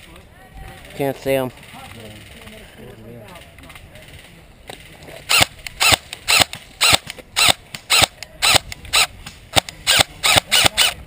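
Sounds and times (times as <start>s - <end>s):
airsoft gun shots: 5.3s - 11.0s.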